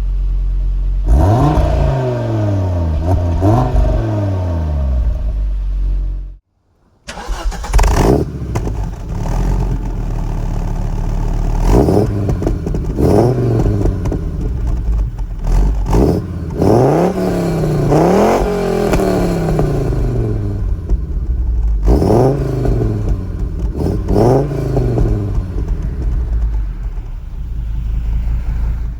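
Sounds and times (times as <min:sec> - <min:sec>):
car engine throttle blips: 0:00.0 - 0:06.4, 0:07.1 - 0:28.9.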